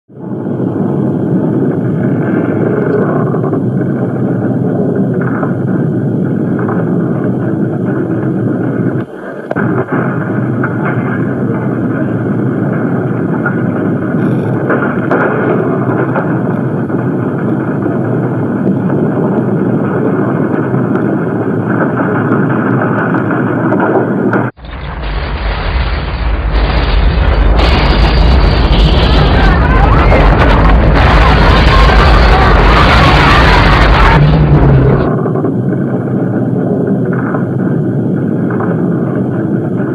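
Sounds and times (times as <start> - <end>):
deep earthquake rumble: 0.1 - 39.9.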